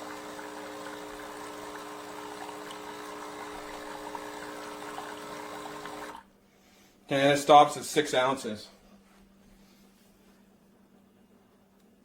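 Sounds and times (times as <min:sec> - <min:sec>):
espresso machine pump humming: 0:00.0 - 0:06.3
water running into cup: 0:00.0 - 0:06.3.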